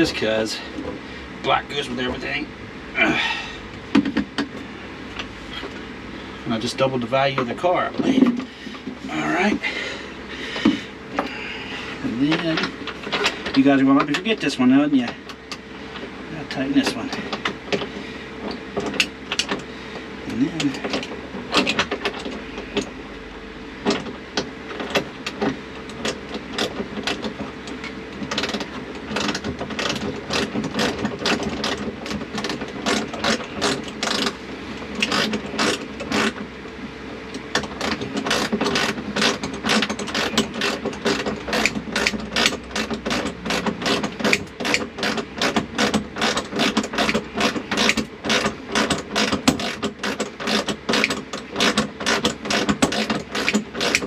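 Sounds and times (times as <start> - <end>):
ratchet wrench clicking: 35.0 - 36.4, 37.6 - 54.0.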